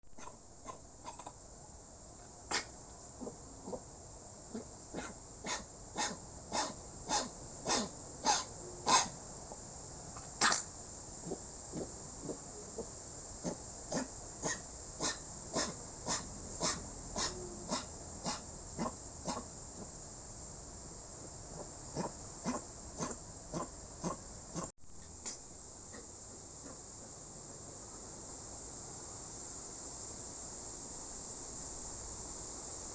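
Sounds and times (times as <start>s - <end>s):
insects chirring: 0.2s - 32.9s
dog coughing: 5.0s - 9.1s.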